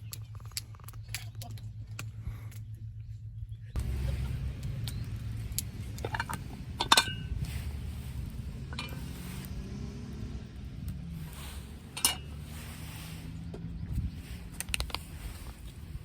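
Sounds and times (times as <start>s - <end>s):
low rumble: 0.0s - 16.0s
metal utensils clinking: 3.8s - 9.5s, 11.6s - 12.9s.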